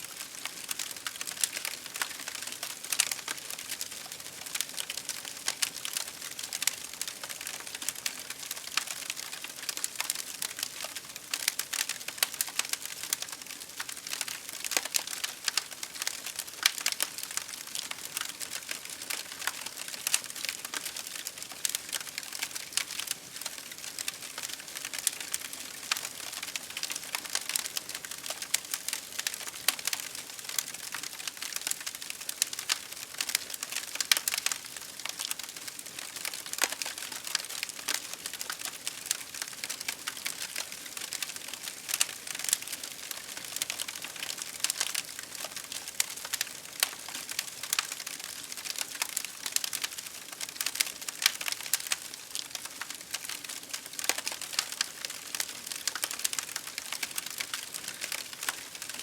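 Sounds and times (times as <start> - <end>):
wood fire crackling: 0.1 - 59.0.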